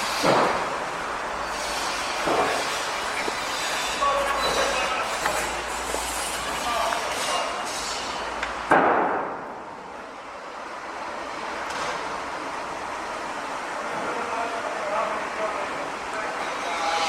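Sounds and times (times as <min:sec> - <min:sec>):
construction clatter: 0:00.0 - 0:09.6
high metallic squeals: 0:01.3 - 0:08.3, 0:16.4 - 0:17.0
loud bang: 0:08.7 - 0:09.7.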